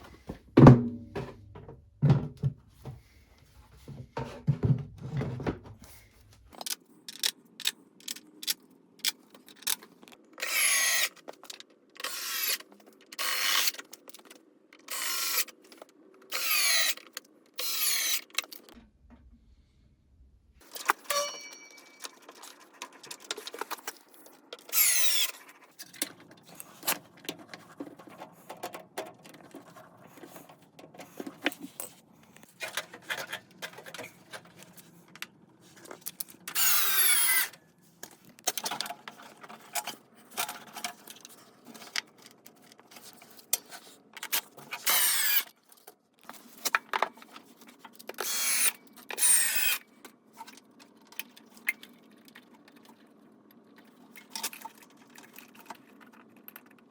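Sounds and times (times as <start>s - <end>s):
clicks and knocks of parts: 6.5s - 18.8s, 20.6s - 48.4s
cordless drill whining: 10.4s - 11.1s, 16.3s - 17.0s, 17.6s - 18.2s.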